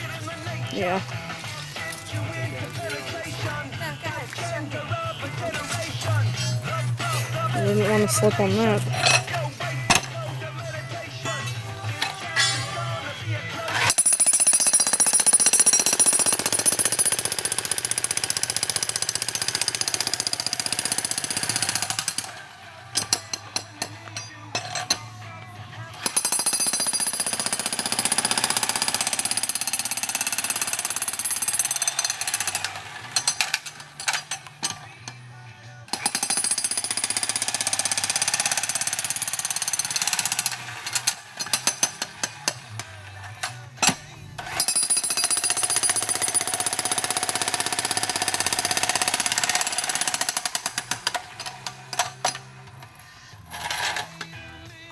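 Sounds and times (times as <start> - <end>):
jackhammer hammering: 13.7 - 24.2, 26.0 - 34.5, 35.9 - 42.8, 43.8 - 52.5.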